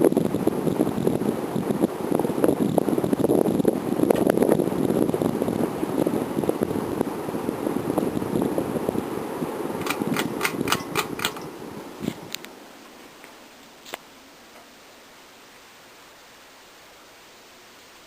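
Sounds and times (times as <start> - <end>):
fan breeze buffeting microphone: 0.0 - 17.0
faint steady hiss: 0.0 - 18.0
clicks: 9.8 - 11.5.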